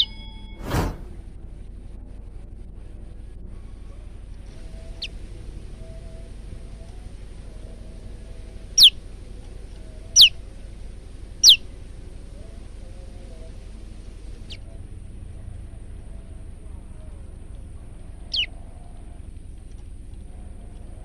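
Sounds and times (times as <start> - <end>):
steady low hum: 0.0 - 21.0
bird calling sharp falling notes: 8.8 - 9.0, 10.2 - 10.4.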